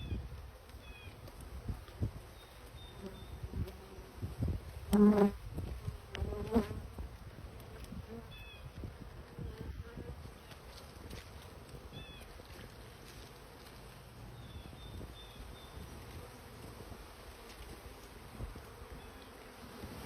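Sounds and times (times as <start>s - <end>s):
bees buzzing: 2.5s - 7.0s.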